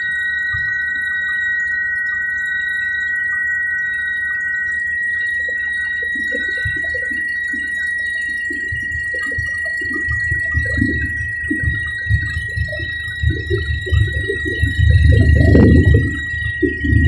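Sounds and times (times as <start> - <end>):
low rumble: 8.8 - 17.0.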